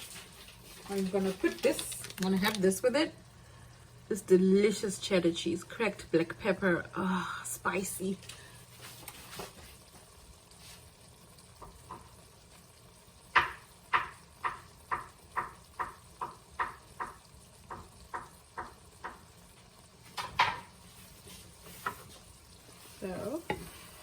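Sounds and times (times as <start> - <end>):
pepper mill grinding: 0.8 - 2.7.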